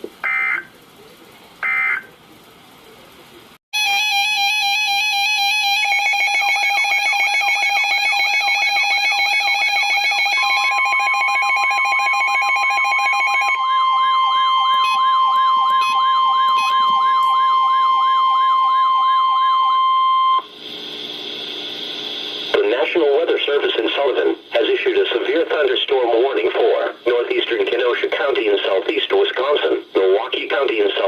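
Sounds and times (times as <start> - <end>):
steady alarm tone: 0.2 - 0.7, 1.6 - 2.1, 3.8 - 21.1
warbling beeper tone: 12.2 - 20.5
rapid siren-like sweep: 13.6 - 20.4.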